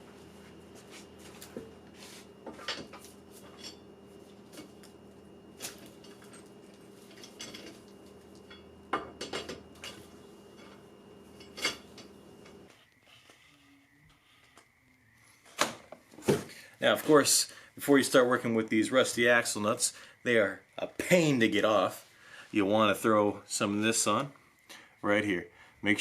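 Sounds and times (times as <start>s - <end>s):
electrical hum: 0.0s - 24.9s
metal tools clinking: 5.8s - 12.6s.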